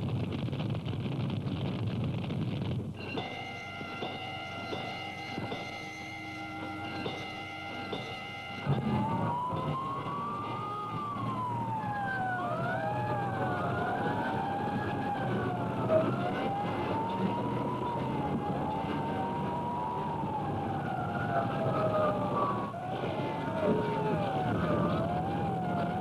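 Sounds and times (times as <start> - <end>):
low engine rumble: 0.0 - 26.0
fire engine sirens wailing: 3.0 - 26.0.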